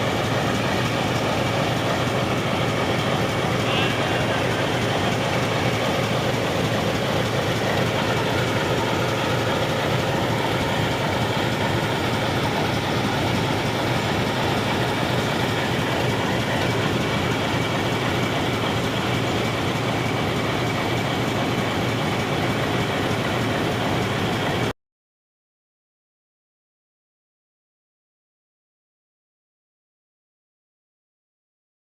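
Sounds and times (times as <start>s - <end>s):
diesel locomotive engine idling: 0.0s - 24.7s.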